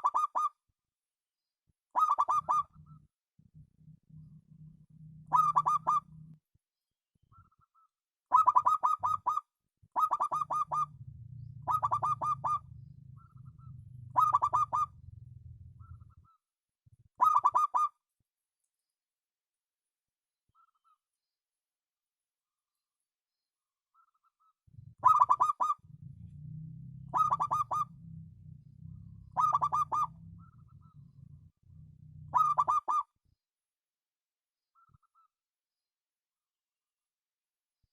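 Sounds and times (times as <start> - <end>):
dove cooing: 2.0 - 3.1, 4.1 - 6.3, 8.3 - 9.4, 10.0 - 16.4, 17.2 - 17.9, 24.7 - 33.1
faint low hum: 2.6 - 6.4, 10.3 - 16.3, 24.7 - 32.8.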